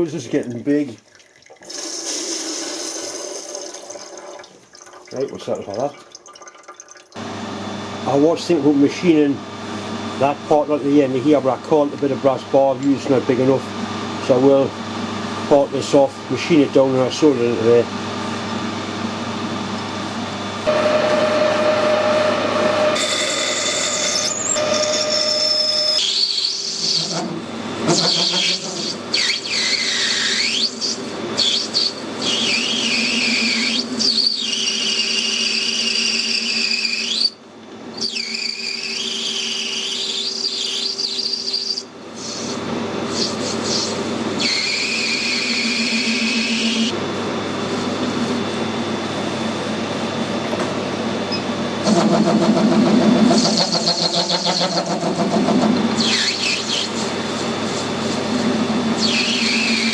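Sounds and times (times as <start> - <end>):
metal lathe running: 20.6 - 37.3, 51.8 - 59.9
shrill cutting squeal: 20.7 - 27.3, 27.9 - 37.4, 38.0 - 42.5, 43.1 - 46.9, 56.0 - 57.1, 59.0 - 59.9.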